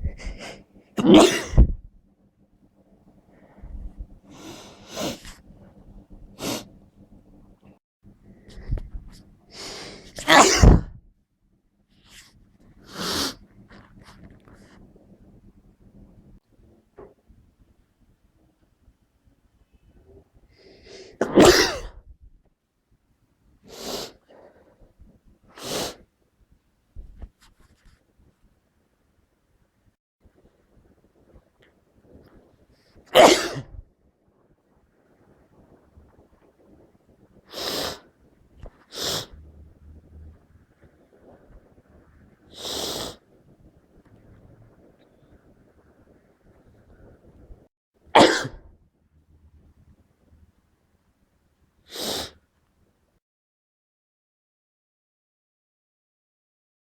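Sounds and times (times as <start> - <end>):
catching breath: 0.0 - 0.6
person sneezing: 0.0 - 1.8, 9.6 - 10.9, 21.0 - 22.0, 33.1 - 33.8, 48.2 - 48.6, 51.9 - 52.4.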